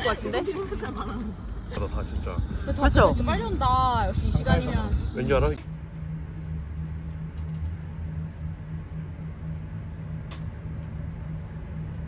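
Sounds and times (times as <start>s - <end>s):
road noise: 0.0s - 6.4s
car engine drone: 0.0s - 12.0s.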